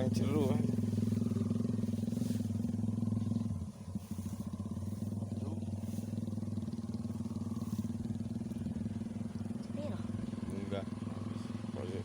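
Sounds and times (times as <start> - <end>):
small engine droning: 0.0 - 12.0.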